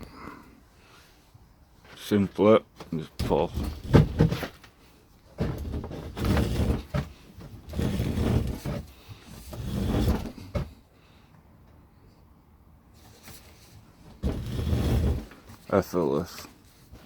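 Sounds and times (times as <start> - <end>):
wire insulation scraping: 3.0 - 4.6, 5.4 - 10.8, 14.1 - 16.4.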